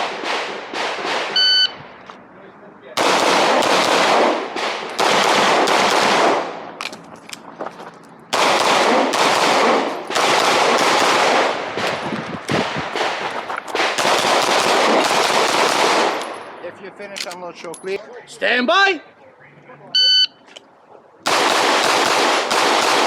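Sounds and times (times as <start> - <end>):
pistol shots with echo: 3.0 - 6.6, 8.3 - 11.9, 13.8 - 16.4, 21.2 - 23.0.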